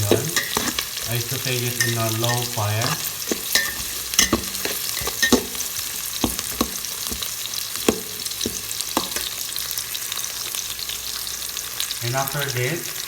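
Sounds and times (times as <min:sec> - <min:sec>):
utensil scraping and tapping pan: 0:00.0 - 0:09.4
food sizzling in oil: 0:00.0 - 0:13.0.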